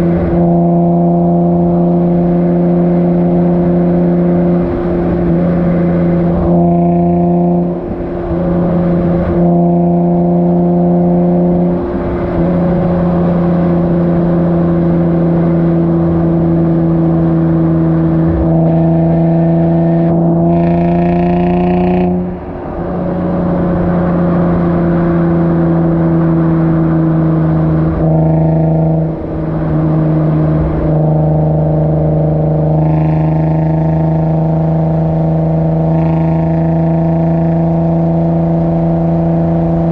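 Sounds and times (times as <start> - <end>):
car exhaust at steady revs: 0.0 - 39.9.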